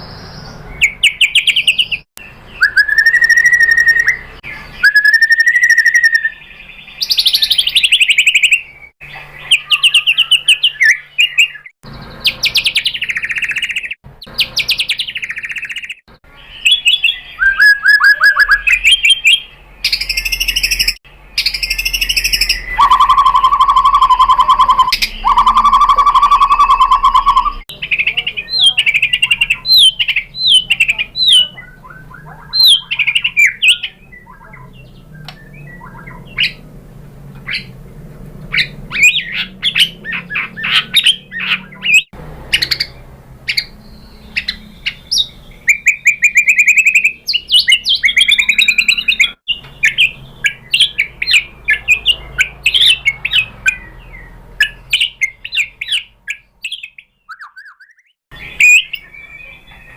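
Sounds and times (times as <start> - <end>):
bird singing trills and whistles: 0.0 - 36.7, 37.4 - 37.8, 38.5 - 59.9.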